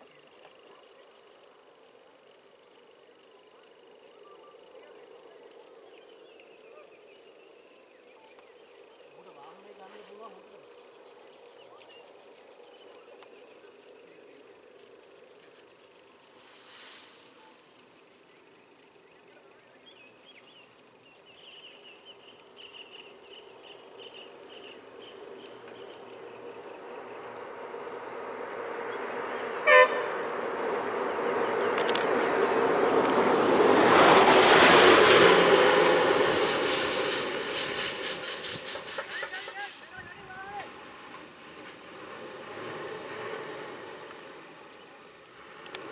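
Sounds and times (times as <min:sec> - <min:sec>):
insects chirping: 0:00.0 - 0:45.9
vehicle approaching: 0:24.2 - 0:45.9
short horn toot: 0:29.6 - 0:30.2.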